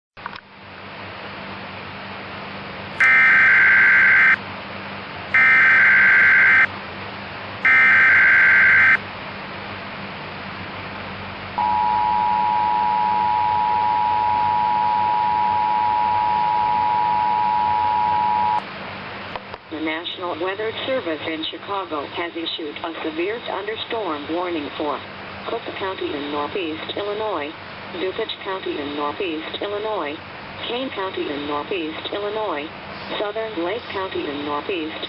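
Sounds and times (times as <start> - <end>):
short buzzing data bursts: 3.0 - 4.4, 5.4 - 6.7, 7.6 - 9.0
two-tone attention signal: 3.0 - 4.4, 5.4 - 6.7, 7.6 - 9.0, 11.6 - 18.6.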